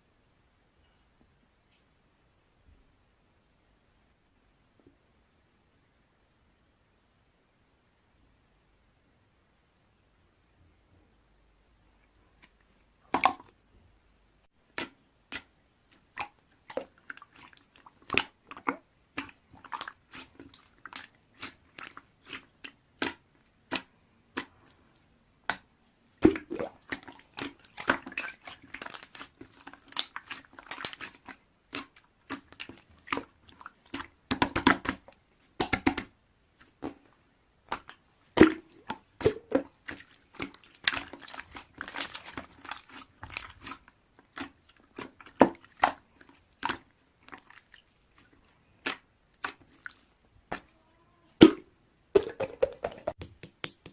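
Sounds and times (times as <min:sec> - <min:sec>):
slime clicking and popping: 0:35.6 - 0:36.1.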